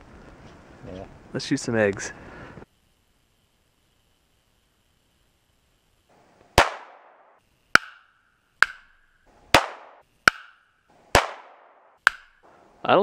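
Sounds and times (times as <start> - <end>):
gunshots with echo: 6.6 - 7.4, 9.5 - 10.0, 11.2 - 11.8.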